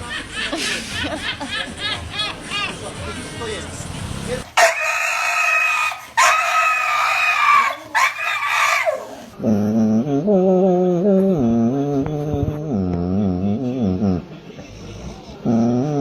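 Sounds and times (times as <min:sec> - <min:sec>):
high-pitched animal calls: 0:04.6 - 0:09.4
low wavering animal call: 0:04.6 - 0:09.4.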